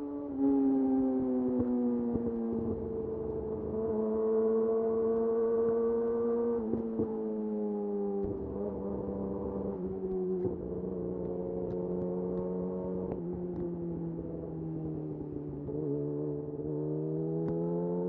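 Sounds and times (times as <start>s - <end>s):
motorcycle engine revving: 8.2s - 18.0s.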